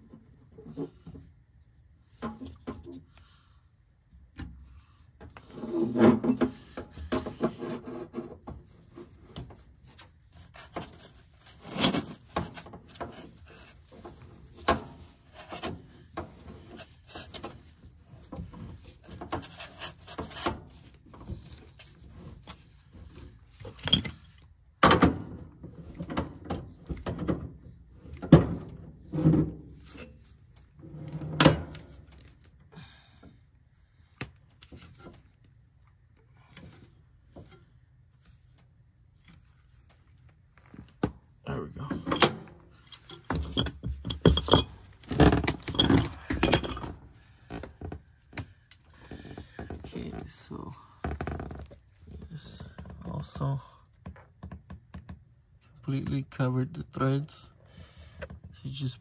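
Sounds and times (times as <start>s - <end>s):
hands handling tools and fittings: 5.2s - 24.6s, 41.8s - 50.3s.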